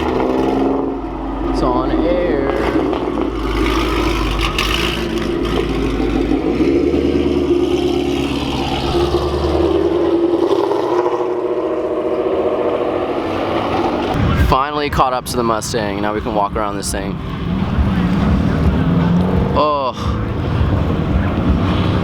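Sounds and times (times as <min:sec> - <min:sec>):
car engine running: 0:00.0 - 0:22.0
deep low rumble: 0:00.0 - 0:22.0.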